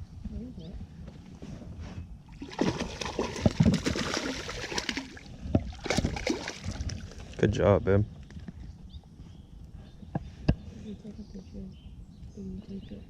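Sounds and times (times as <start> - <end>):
fish thrashing water splashing: 2.3 - 7.2.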